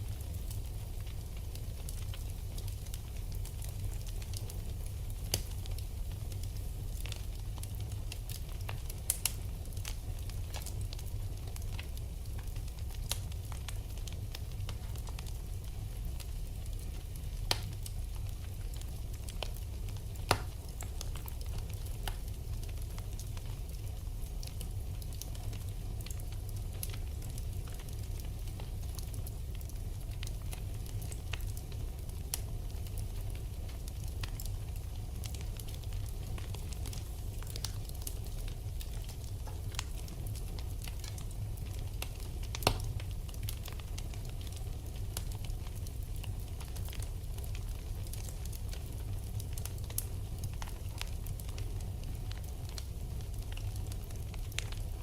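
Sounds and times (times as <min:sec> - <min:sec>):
wood fire crackling: 0:00.0 - 0:55.0
loud fire pops: 0:20.1 - 0:22.2, 0:35.2 - 0:47.6.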